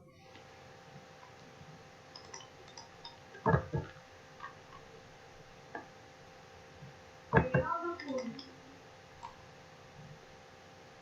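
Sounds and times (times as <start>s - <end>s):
faint steady hum: 0.0s - 11.0s
computer mouse clicking: 2.1s - 4.9s, 7.4s - 8.5s, 9.2s - 9.4s.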